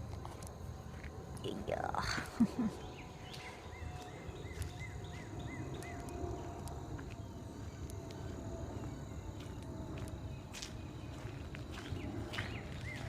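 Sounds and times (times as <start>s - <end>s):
footsteps rustling on trail: 0.0s - 13.0s.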